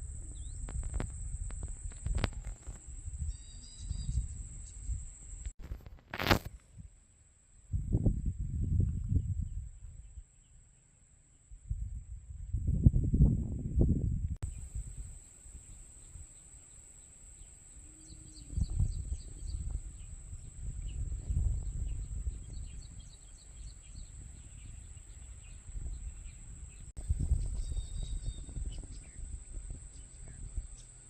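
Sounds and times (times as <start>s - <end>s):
wind buffeting microphone: 0.0s - 5.9s, 7.7s - 10.2s, 11.6s - 16.4s, 17.3s - 31.0s.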